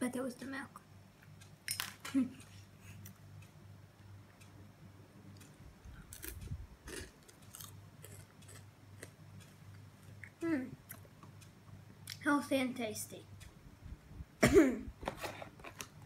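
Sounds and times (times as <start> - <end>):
child chewing crunchy food: 5.3 - 11.4.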